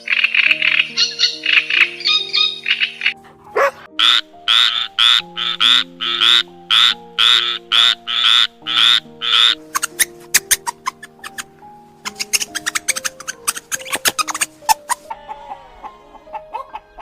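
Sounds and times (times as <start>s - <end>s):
frog croaking: 0.0s - 3.2s, 4.0s - 15.0s
background music: 0.0s - 17.0s
rapid high squeaks: 9.4s - 15.1s.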